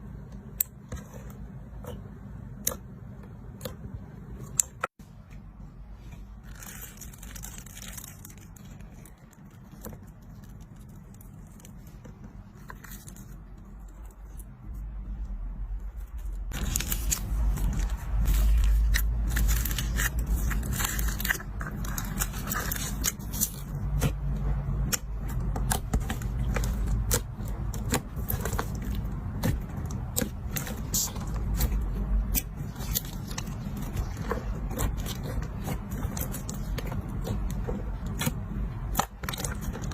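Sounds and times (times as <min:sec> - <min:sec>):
low rumble: 0:13.5 - 0:39.6
slime squishing and clicking: 0:24.8 - 0:39.9.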